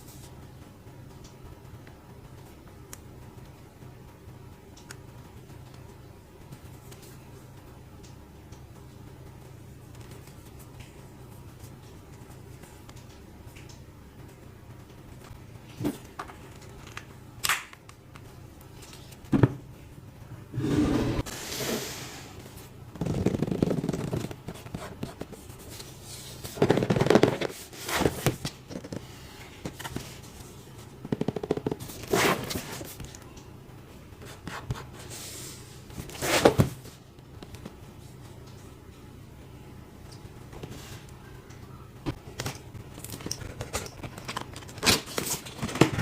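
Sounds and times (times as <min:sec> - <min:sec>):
packaging rustling and scraping: 0:42.9 - 0:46.0.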